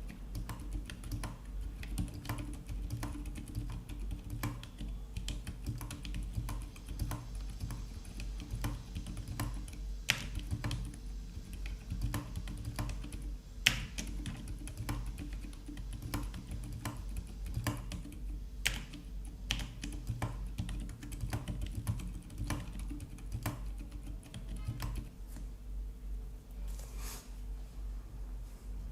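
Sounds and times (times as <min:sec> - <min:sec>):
soft muted keyboard keystrokes: 0:00.0 - 0:25.5.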